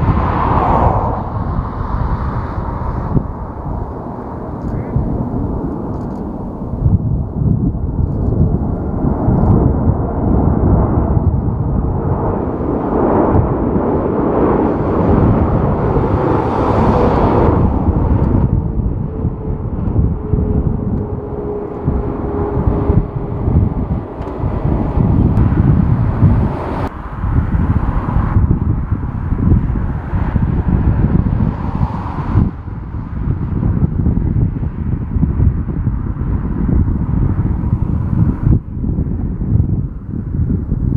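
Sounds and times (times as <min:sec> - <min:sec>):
faint whine dropping in pitch: 0:00.0 - 0:29.3
jet airliner passing: 0:00.0 - 0:40.7
wind buffeting microphone: 0:00.0 - 0:40.9.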